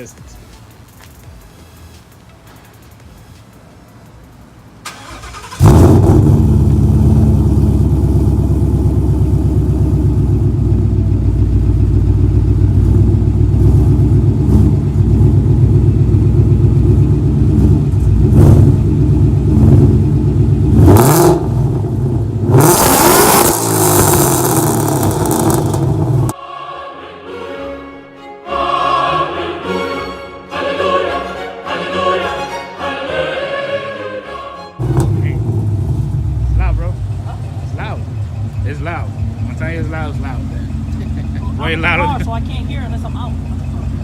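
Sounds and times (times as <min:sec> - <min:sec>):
car engine starting: 0:01.3 - 0:26.4, 0:34.8 - 0:44.0
engine revving: 0:04.9 - 0:26.4, 0:34.8 - 0:44.0
car engine idling loud: 0:05.6 - 0:26.3, 0:34.8 - 0:44.0.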